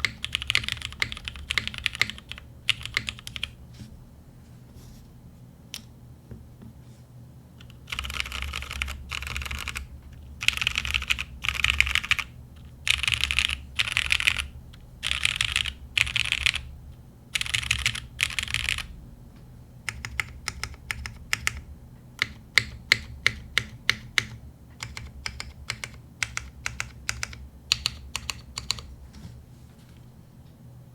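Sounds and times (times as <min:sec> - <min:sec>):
mechanical keyboard typing: 0:00.0 - 0:03.6, 0:07.6 - 0:16.6, 0:17.4 - 0:18.9, 0:19.9 - 0:28.9.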